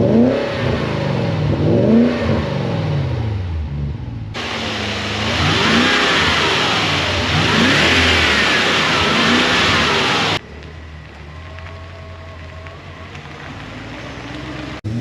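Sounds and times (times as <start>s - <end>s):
car engine revving: 0.0s - 15.0s
loud rushing noise: 4.4s - 10.4s.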